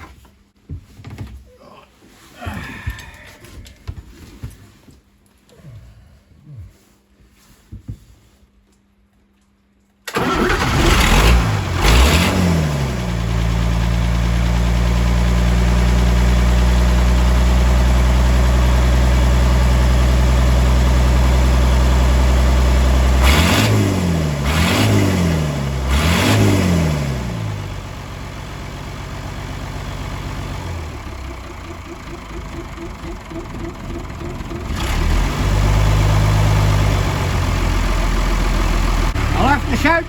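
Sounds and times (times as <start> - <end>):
tractor engine starting and revving: 10.1 - 40.0.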